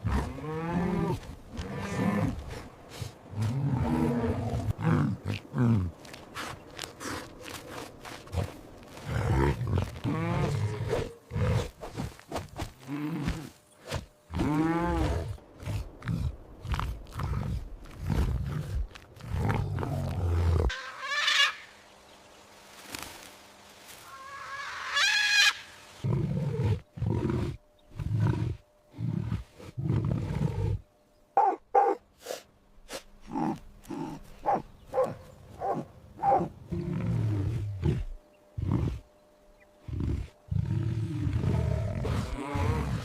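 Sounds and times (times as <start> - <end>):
high-pitched animal call: 24.1 - 25.7
big cat roaring: 39.8 - 43.0.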